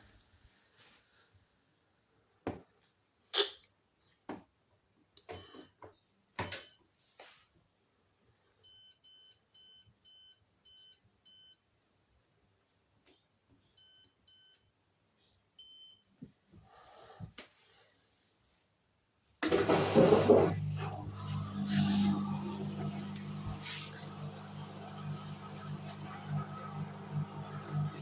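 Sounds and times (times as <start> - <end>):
washing machine panel beeping: 19.5 - 28.0.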